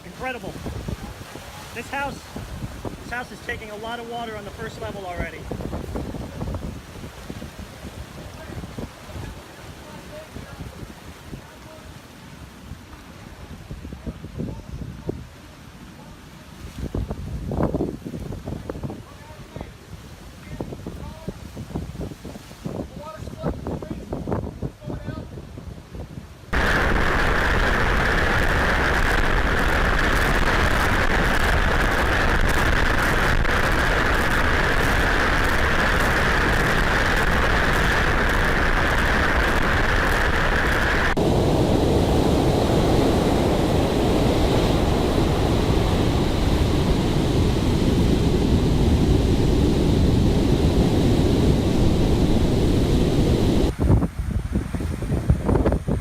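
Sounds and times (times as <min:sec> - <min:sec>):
storm surf rushing: 0:00.0 - 0:14.0, 0:26.5 - 0:56.0
strong wind on microphone: 0:00.0 - 0:56.0.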